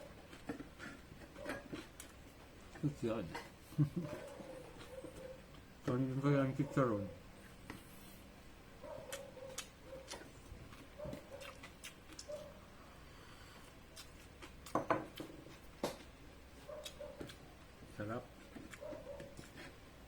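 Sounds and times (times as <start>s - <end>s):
crunchy food being chewed: 0.0s - 2.8s, 3.7s - 6.1s, 9.0s - 12.7s, 13.3s - 19.9s.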